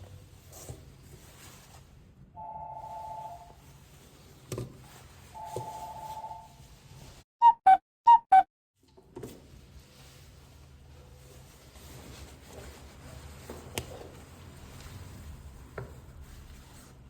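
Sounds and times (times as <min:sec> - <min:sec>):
loud beep: 0:07.4 - 0:08.5.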